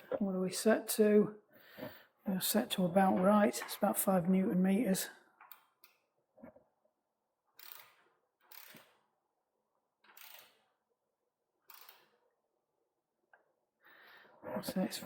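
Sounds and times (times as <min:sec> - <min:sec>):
torque wrench ratcheting: 0:07.6 - 0:09.0, 0:10.0 - 0:10.6, 0:11.7 - 0:12.1.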